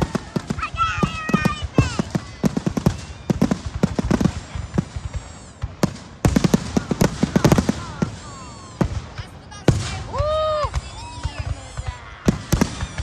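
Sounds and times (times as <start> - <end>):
fireworks bangs and crackles: 0.0 - 13.0.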